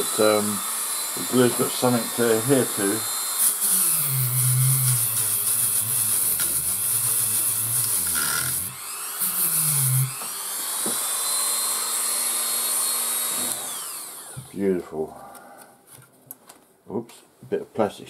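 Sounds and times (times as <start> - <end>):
rotary tool whining on plastic: 3.0 - 14.6.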